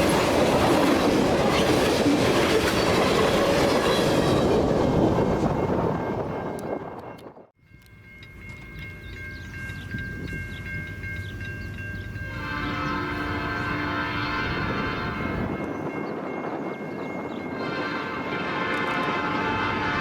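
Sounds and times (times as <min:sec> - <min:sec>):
wind buffeting microphone: 0:00.0 - 0:20.0
locomotive horn blast: 0:12.3 - 0:15.6, 0:17.6 - 0:20.0.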